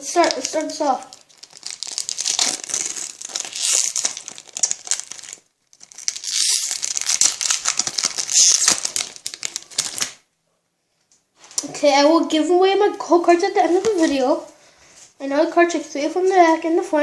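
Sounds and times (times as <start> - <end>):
foil wrapper tearing and crinkling: 0.1 - 10.2.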